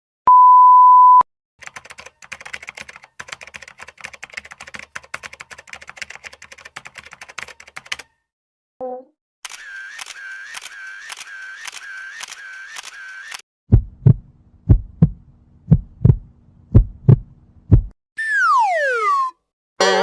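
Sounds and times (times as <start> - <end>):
heartbeat thumps: 13.7 - 18.0.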